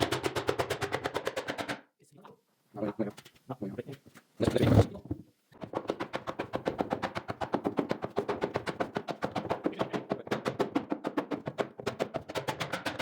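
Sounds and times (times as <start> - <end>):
rapid hammering on wooden cask: 0.0 - 1.9, 5.6 - 13.0.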